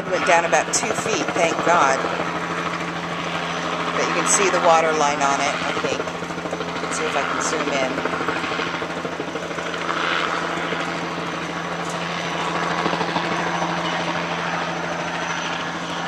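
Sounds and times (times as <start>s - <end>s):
mechanical drone with fast flutter: 0.0s - 16.0s.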